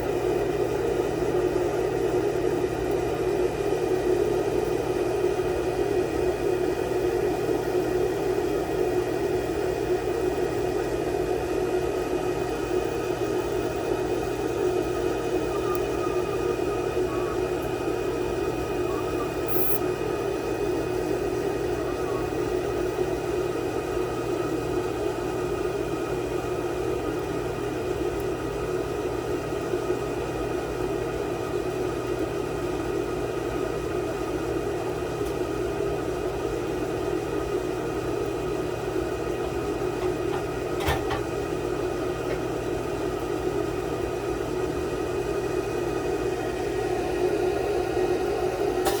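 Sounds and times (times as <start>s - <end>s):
machine electric hum: 0.0s - 49.0s
fan noise: 3.9s - 31.2s.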